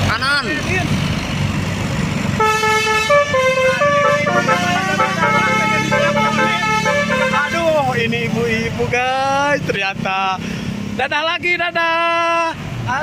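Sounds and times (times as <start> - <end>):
bus engine rumble: 0.0 - 13.0
road noise: 0.0 - 13.0
bus multi-tone air horn tune: 2.4 - 7.8.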